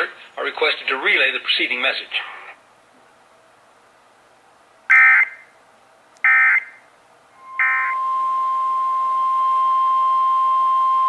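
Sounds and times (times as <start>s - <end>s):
screeching data bursts: 7.4s - 11.0s
steady single-pitch alert tone: 7.4s - 11.0s.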